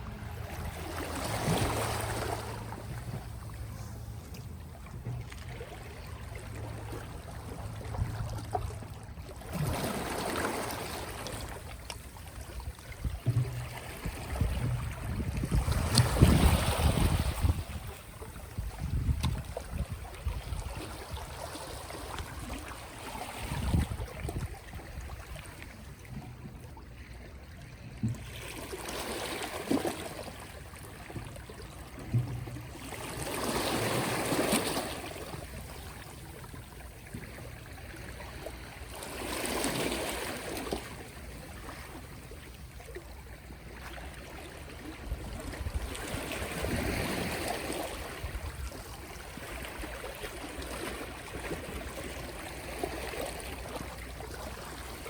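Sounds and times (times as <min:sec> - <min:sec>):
low steady rumble: 0:00.0 - 0:09.7, 0:11.0 - 0:21.4, 0:30.2 - 0:34.2
gentle waves washing ashore: 0:00.0 - 0:55.0.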